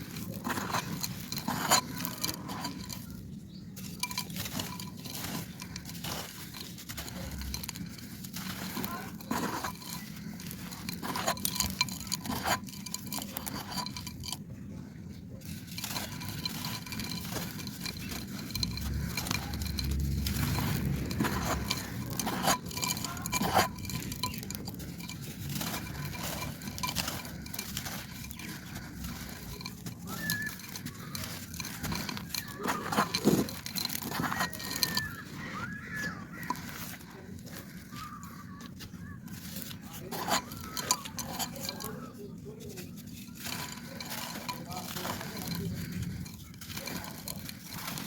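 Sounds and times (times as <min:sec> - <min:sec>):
clay pot crumbling and crushed: 0:00.0 - 0:48.0.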